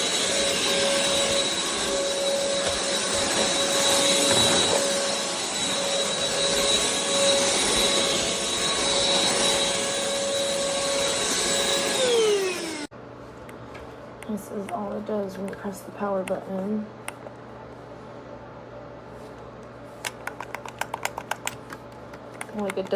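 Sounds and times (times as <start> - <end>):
stick vacuum running: 0.0 - 12.9.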